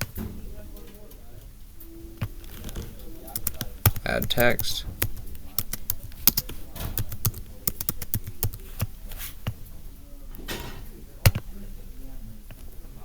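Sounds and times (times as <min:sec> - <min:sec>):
computer keyboard typing: 0:02.2 - 0:11.6, 0:12.4 - 0:12.8.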